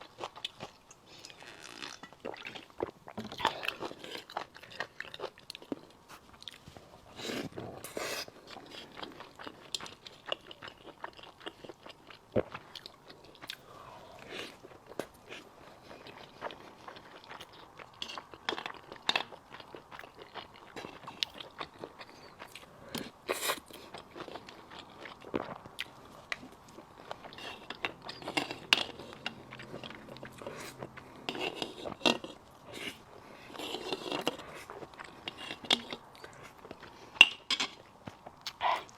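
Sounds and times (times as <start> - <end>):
person chewing food: 0.0 - 38.9.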